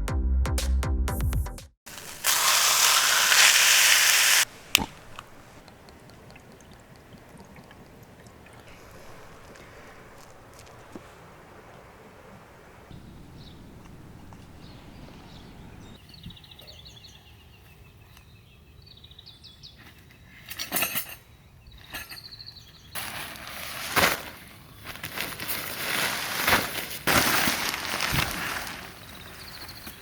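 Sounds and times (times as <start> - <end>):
birds chirping faintly: 4.1 - 23.0, 27.9 - 30.0
camping gear rustling and clinking: 8.1 - 12.8, 19.8 - 30.0.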